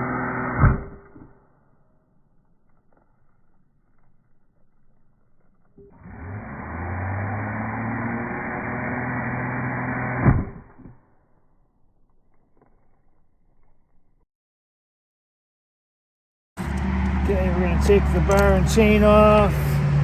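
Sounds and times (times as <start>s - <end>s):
chainsaw running: 0.0s - 1.3s, 5.8s - 10.9s, 16.6s - 20.0s.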